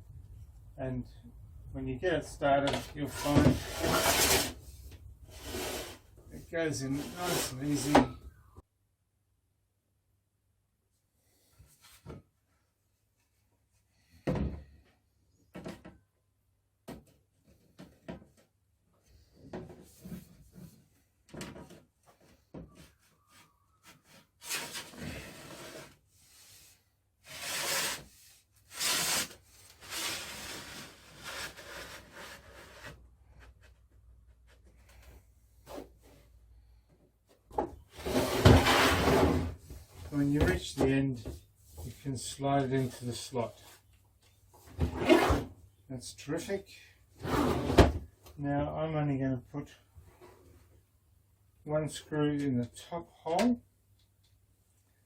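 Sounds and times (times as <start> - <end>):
metal panel sliding scrapes: 3.1 - 4.6, 5.3 - 6.0, 38.0 - 39.5, 44.8 - 45.5, 47.2 - 47.8.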